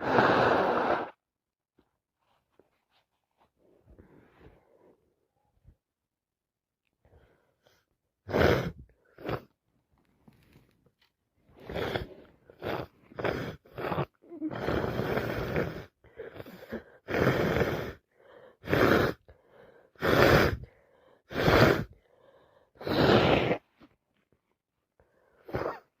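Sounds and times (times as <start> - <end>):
woman blowing her nose: 0.0 - 1.2, 8.3 - 9.5, 11.6 - 18.0, 18.6 - 19.2, 20.0 - 20.7, 21.3 - 22.0, 22.8 - 23.8, 25.4 - 26.0.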